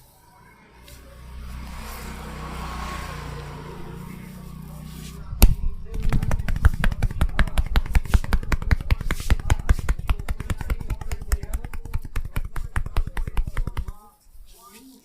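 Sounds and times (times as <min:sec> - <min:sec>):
hands slapping in massage: 0:05.4 - 0:14.0.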